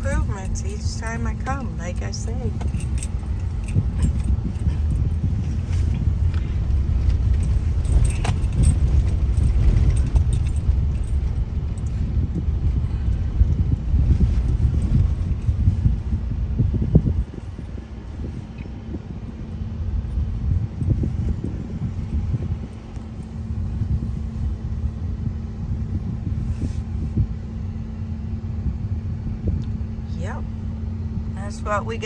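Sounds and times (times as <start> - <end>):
light rattling and clicking: 0.0 - 12.0
car road and engine rumble: 0.0 - 32.0.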